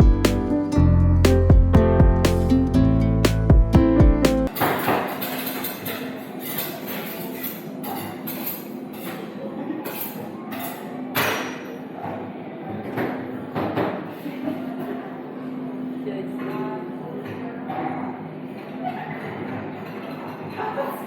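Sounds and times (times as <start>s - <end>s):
knocks and clicks: 1.2s - 4.5s.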